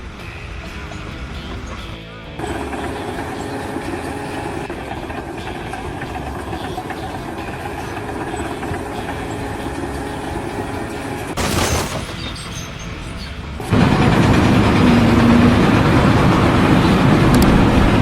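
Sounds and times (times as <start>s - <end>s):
running machinery: 0.0s - 18.0s
loud rushing burst: 2.4s - 12.5s, 13.6s - 18.0s.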